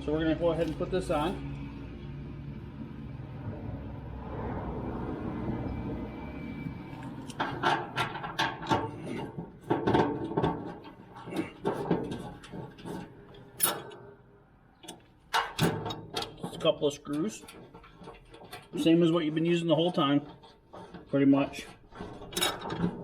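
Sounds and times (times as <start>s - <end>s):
low rumble: 1.4s - 7.2s
grill parts clicking and knocking: 7.2s - 14.2s, 14.8s - 23.0s.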